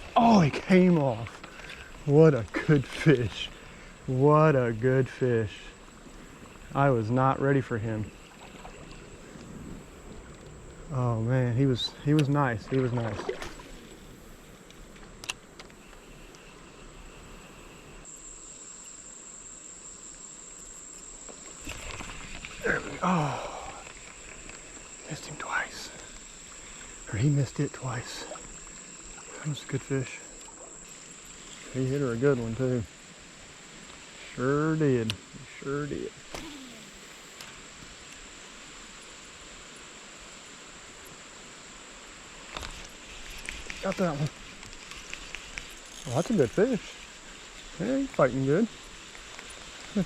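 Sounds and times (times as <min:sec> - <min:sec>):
insects trilling: 0:00.0 - 0:50.0
outdoor background hiss: 0:00.0 - 0:50.0.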